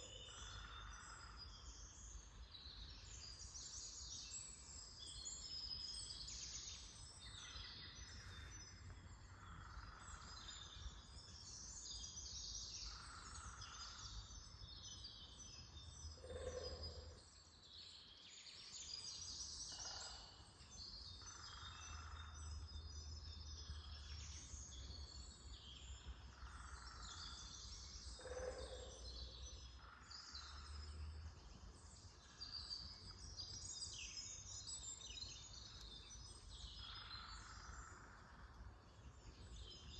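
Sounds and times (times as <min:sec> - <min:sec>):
birds chirping and trilling: 0:18.8 - 0:39.9.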